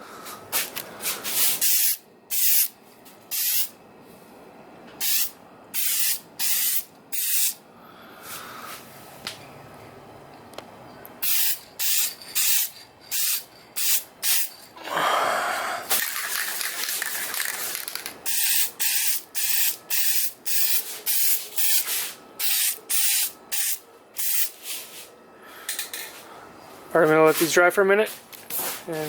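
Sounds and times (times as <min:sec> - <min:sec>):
aerosol can spraying: 0:01.4 - 0:02.7, 0:03.3 - 0:03.7, 0:05.0 - 0:07.6, 0:11.2 - 0:14.5, 0:15.9 - 0:24.6.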